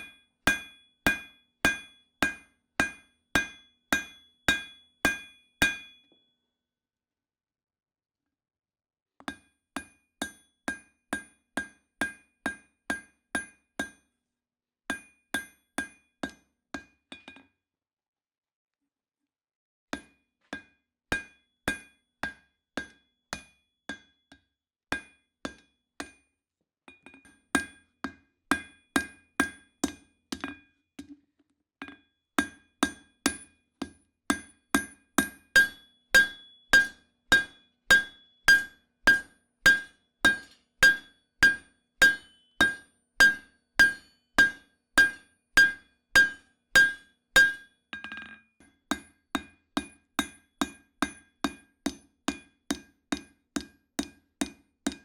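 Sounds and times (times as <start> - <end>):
hammer striking steel on anvil: 0.0 - 6.0, 34.3 - 48.2.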